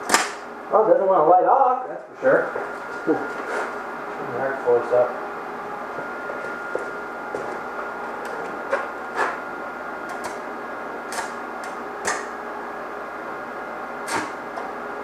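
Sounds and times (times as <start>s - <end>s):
welding arc crackle with pops: 10.0s - 10.4s, 11.1s - 12.4s.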